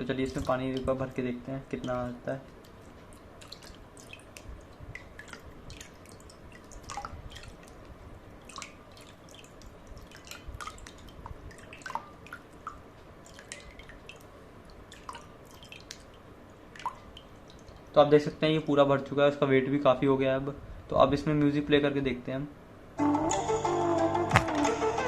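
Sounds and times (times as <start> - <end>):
water dripping: 0.0 - 18.0.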